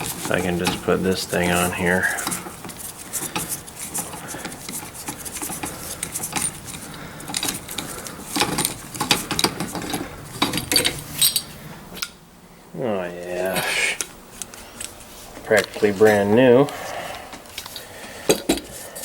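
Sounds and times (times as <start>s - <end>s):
small hard parts clicking and rattling: 0.0s - 12.1s.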